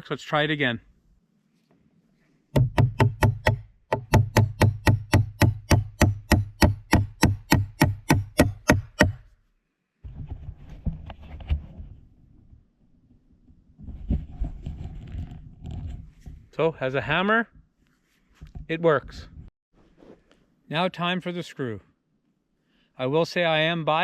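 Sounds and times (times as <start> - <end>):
hammer tapping nail into wood: 2.6 - 9.2.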